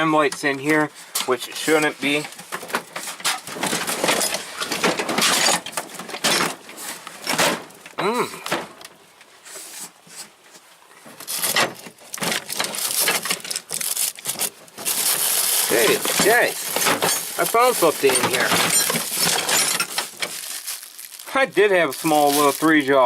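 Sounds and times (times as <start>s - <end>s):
metal hand tools clanking: 15.8s - 20.2s.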